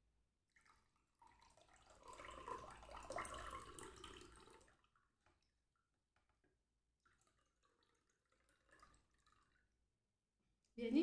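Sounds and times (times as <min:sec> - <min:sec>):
liquid trickling into a glass: 0:00.6 - 0:05.1, 0:07.0 - 0:09.8.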